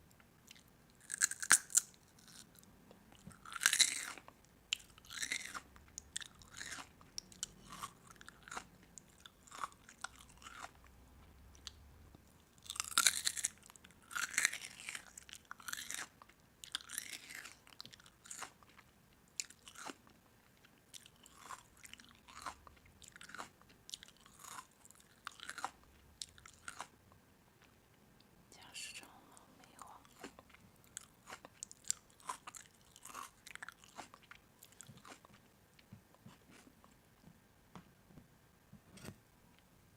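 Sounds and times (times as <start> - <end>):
crisp food crunching: 0.5 - 2.6, 3.2 - 10.8, 12.5 - 26.9, 29.8 - 35.5.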